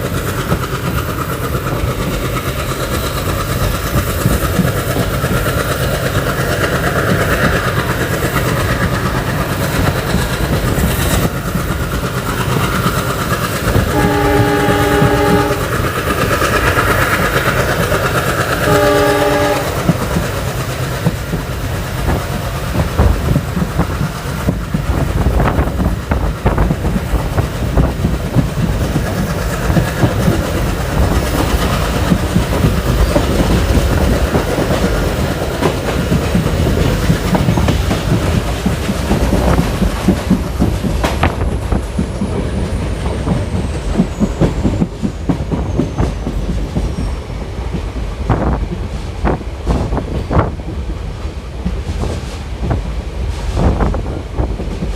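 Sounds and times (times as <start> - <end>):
train rumble: 0.0 - 54.9
wheels clacking over rail joints: 0.0 - 54.9
train horn: 13.9 - 15.9, 18.6 - 20.0.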